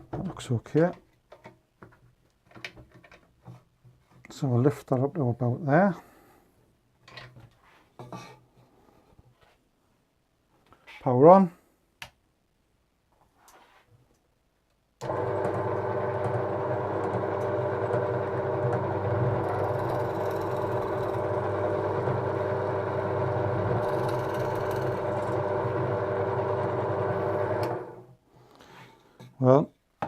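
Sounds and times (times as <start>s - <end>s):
drill press humming: 15.0s - 28.1s
drill bit cutting hiss: 23.8s - 25.4s.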